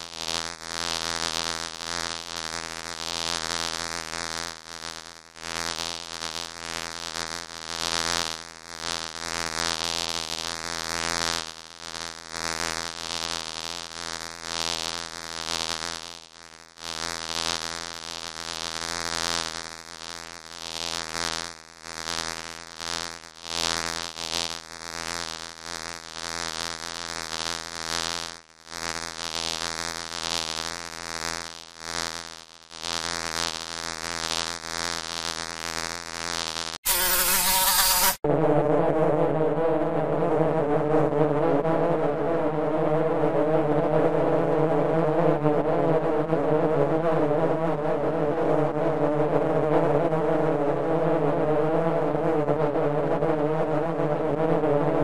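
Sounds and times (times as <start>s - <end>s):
bee buzzing in flight: 35.2s - 38.2s.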